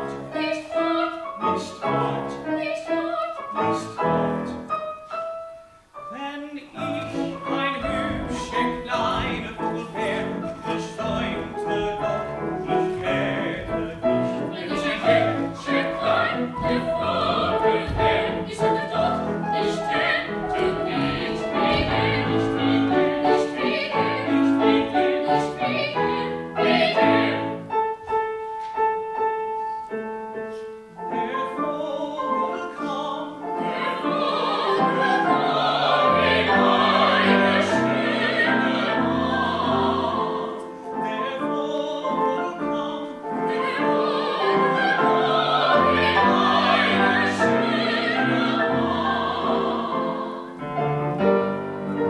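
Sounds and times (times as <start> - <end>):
piano accompaniment: 0.0 - 52.0
operatic singing: 6.1 - 27.7, 31.1 - 50.9.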